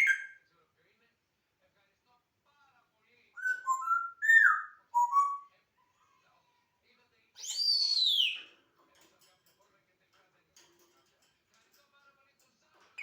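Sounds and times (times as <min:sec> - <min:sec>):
parrot whistling: 0:00.0 - 0:00.4, 0:03.4 - 0:05.5, 0:07.4 - 0:08.4.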